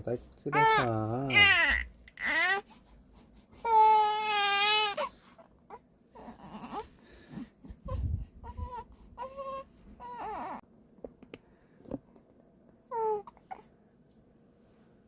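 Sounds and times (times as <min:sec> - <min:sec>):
newborn baby crying: 0:00.5 - 0:02.8, 0:03.6 - 0:06.9, 0:08.4 - 0:10.6, 0:12.9 - 0:13.6.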